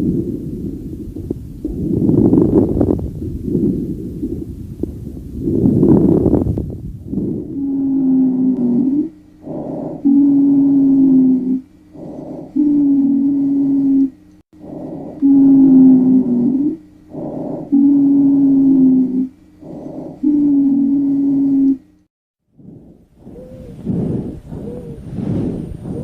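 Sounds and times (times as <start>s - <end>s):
breathing with low wheeze: 22.5s - 26.0s.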